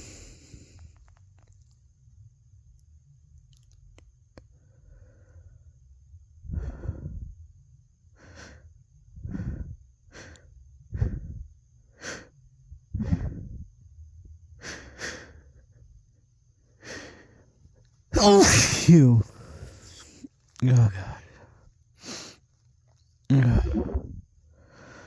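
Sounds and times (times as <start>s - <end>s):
person breathing heavily: 6.4s - 7.4s, 9.2s - 12.3s, 12.9s - 13.6s, 14.6s - 15.8s, 16.8s - 17.5s, 18.2s - 22.4s, 23.3s - 25.0s.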